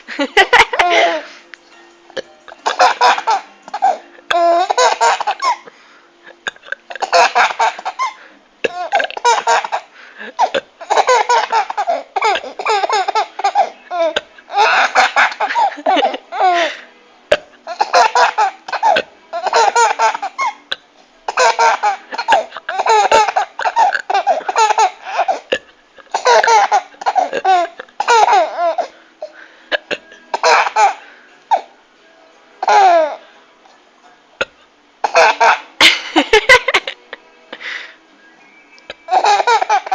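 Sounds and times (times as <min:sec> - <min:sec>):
hearty laughter: 0:35.8 - 0:37.2.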